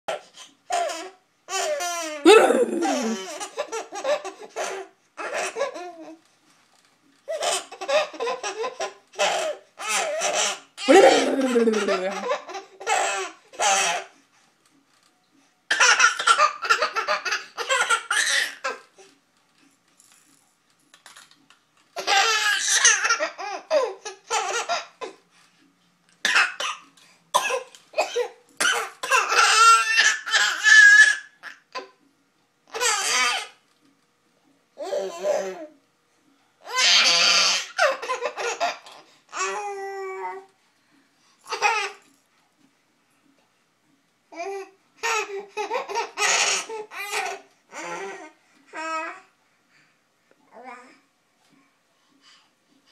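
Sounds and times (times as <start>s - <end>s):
person laughing: 2.3s - 3.2s, 10.9s - 12.3s.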